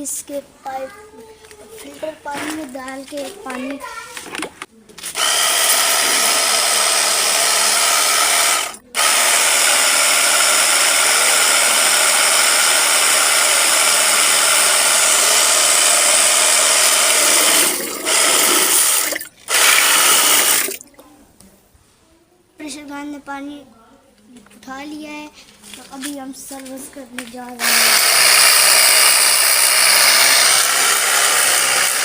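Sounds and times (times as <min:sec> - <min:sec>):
pressure washer motor running: 0:05.2 - 0:20.8, 0:27.6 - 0:32.0.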